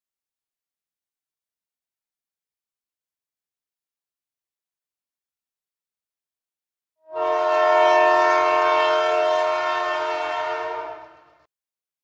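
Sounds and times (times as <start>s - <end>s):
train horn blast: 7.0s - 11.5s.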